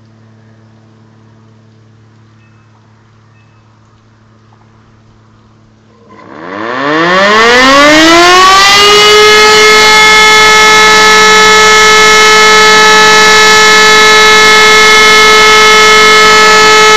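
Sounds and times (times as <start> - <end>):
motor siren spinning up: 6.0 - 16.9.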